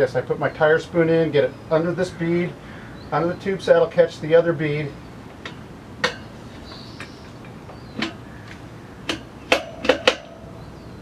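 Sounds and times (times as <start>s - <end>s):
tire spoon knocking on rim: 5.4s - 10.4s.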